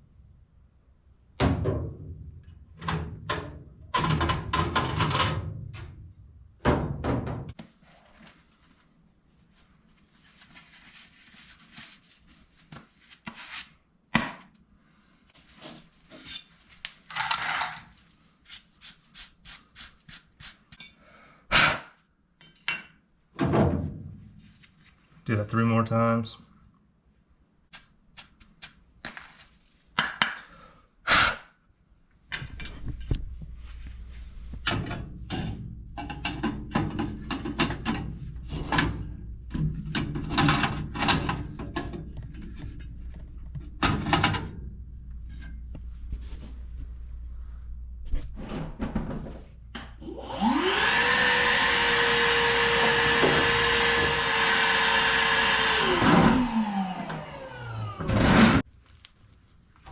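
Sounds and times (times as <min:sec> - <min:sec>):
metal parts knocking and clattering: 0:17.1 - 0:17.9
small electric motor whining: 0:50.0 - 0:58.2.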